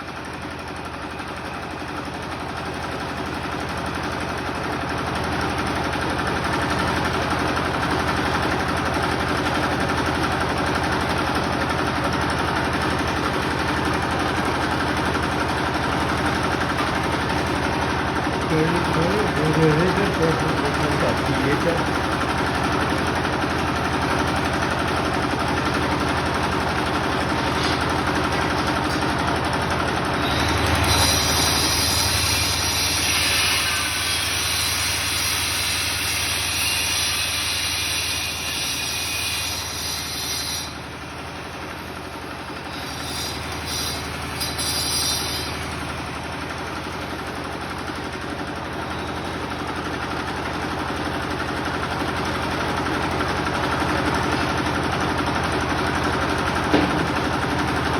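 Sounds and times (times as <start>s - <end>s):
generator engine running: 0.0s - 37.1s, 40.8s - 57.9s
tile cutter whining through tile: 18.5s - 21.9s, 26.7s - 29.1s, 30.2s - 40.8s, 42.6s - 45.6s.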